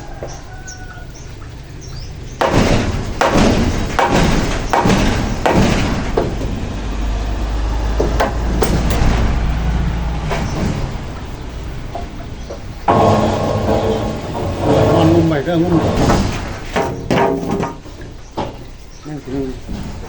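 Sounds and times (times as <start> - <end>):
low rumble: 0.0 - 17.0
hammer knocking on roof: 2.4 - 9.4.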